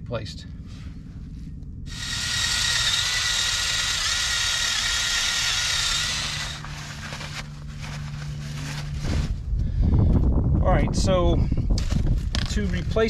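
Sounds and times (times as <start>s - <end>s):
low steady hum: 0.0s - 13.0s
power tool whining: 1.9s - 7.5s.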